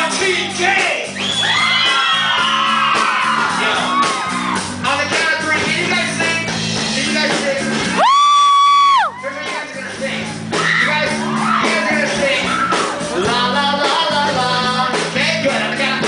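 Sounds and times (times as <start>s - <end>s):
loud music with singing: 0.0s - 16.0s
crowd shouting and whooping: 1.1s - 4.8s, 7.9s - 9.9s, 10.5s - 13.5s.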